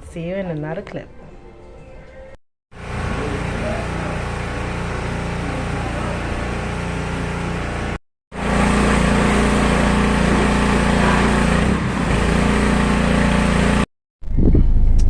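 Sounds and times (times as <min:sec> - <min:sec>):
motor running with hiss: 0:02.8 - 0:13.7.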